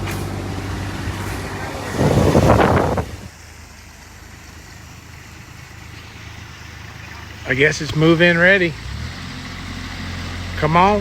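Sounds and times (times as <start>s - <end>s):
engine humming: 0.0s - 11.0s
loud rushing burst: 0.6s - 3.3s.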